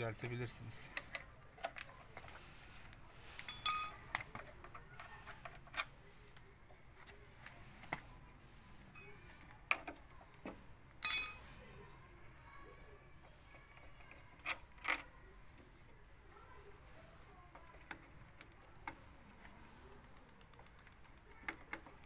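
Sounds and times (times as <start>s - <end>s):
metal tools clinking: 3.4s - 4.4s, 11.0s - 11.6s.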